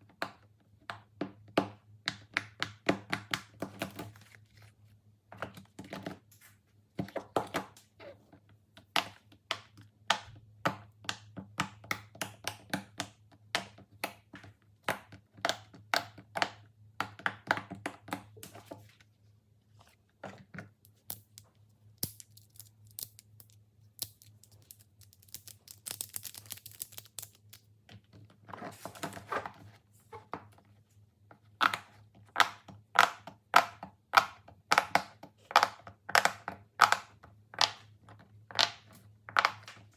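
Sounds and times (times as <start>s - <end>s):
plastic fidget toys clicking: 22.0s - 27.6s.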